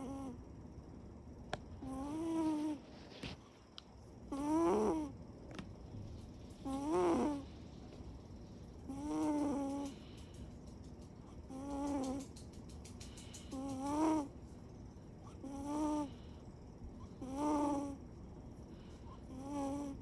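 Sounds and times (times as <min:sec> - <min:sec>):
cat snoring: 0:00.0 - 0:00.4, 0:01.8 - 0:02.8, 0:04.3 - 0:05.1, 0:06.7 - 0:07.5, 0:08.9 - 0:10.0, 0:15.3 - 0:16.3, 0:17.2 - 0:18.0, 0:19.3 - 0:20.0.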